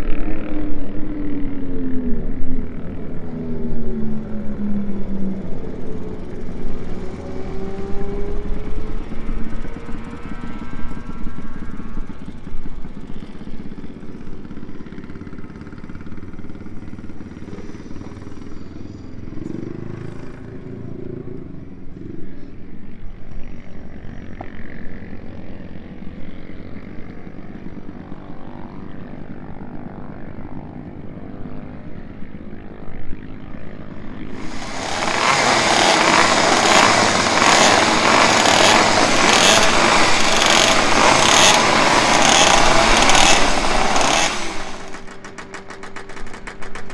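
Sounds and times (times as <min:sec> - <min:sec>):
two-stroke racing engine buzzing: 0:04.2 - 0:10.9, 0:34.3 - 0:46.9
low engine noise: 0:34.4 - 0:46.8.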